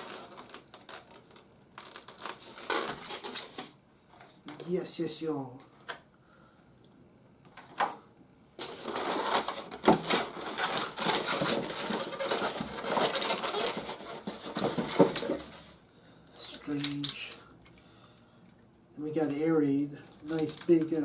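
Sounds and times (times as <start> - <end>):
plastic packaging crinkling: 0.0 - 3.7, 8.6 - 15.8, 16.4 - 17.4, 20.1 - 21.0.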